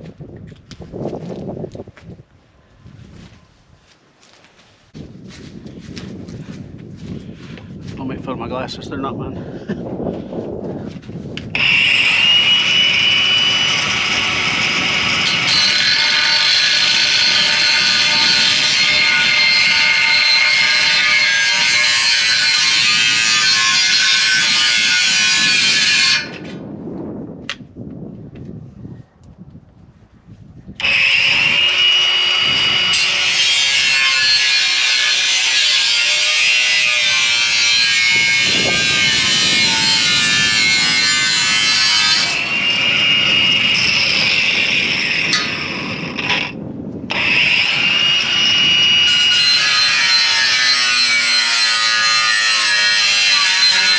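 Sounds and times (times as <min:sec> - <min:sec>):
power tool cutting: 0:11.6 - 0:26.5, 0:30.8 - 0:53.9.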